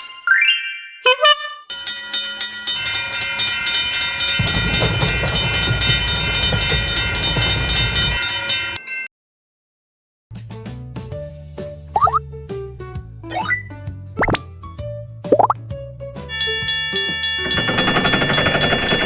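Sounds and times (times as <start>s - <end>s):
train rumbling on rails: 2.8s - 8.8s, 16.5s - 19.0s.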